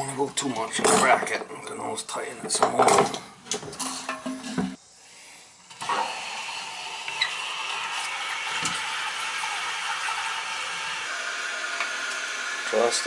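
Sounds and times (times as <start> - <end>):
water filling toilet tank: 5.7 - 13.0.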